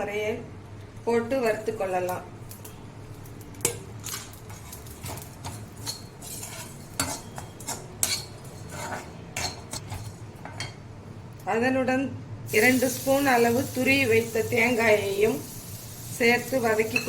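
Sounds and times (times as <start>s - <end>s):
spoon scraping and clinking a pan: 4.1s - 10.8s.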